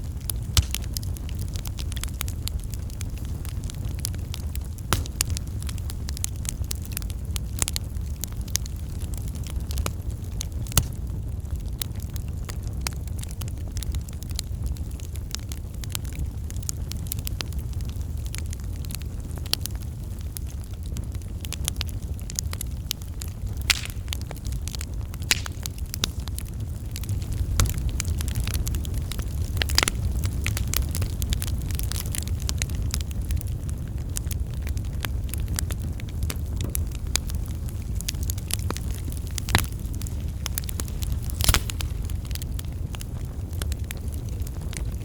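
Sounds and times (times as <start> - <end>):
fire low rumble: 0.0 - 45.0
wood fire crackling and popping: 0.0 - 45.0.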